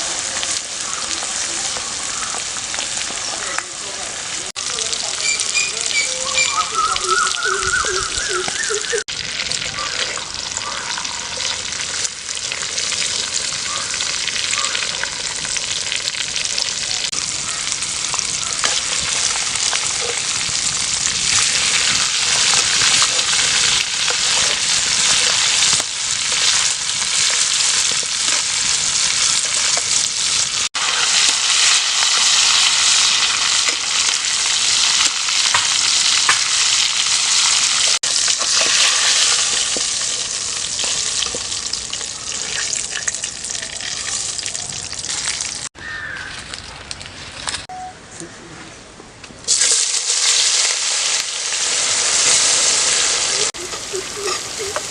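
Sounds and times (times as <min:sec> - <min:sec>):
food sizzling in hot oil: 0:00.0 - 0:46.2, 0:49.5 - 0:54.9.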